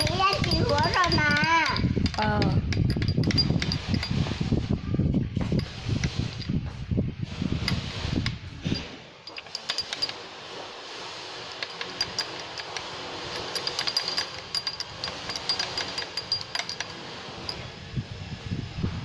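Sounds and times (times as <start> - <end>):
steady hiss: 3.7 - 18.8.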